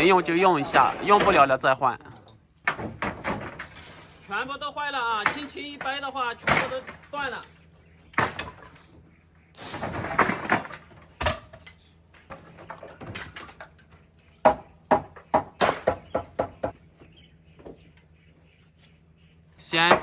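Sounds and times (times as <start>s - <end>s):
sharp knocks and cracks: 2.6s - 3.8s, 5.1s - 7.4s, 8.1s - 9.0s, 9.7s - 16.8s.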